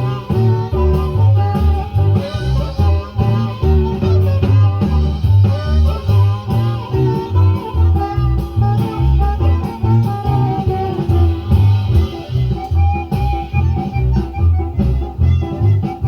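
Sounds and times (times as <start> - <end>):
instrumental guitar music with bass beat: 0.0 - 16.0.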